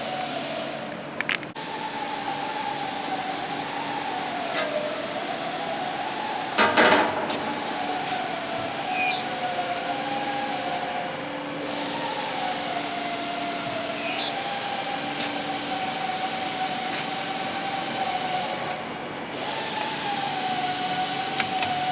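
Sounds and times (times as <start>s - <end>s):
grinder whining: 7.4s - 19.3s.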